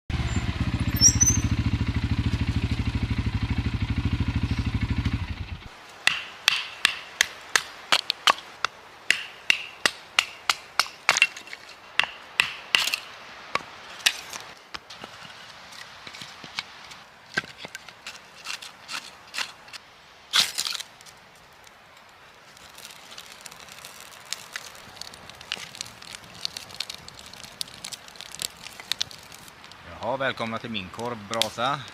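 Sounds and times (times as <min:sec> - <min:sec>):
atv engine running: 0:00.1 - 0:05.7
sharp knocks and cracks: 0:06.0 - 0:15.1, 0:22.8 - 0:29.8.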